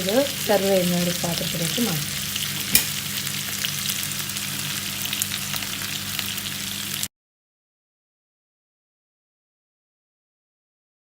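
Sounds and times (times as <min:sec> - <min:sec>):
chicken sizzling in a pan: 0:00.0 - 0:07.1
sharp click: 0:02.7 - 0:03.0.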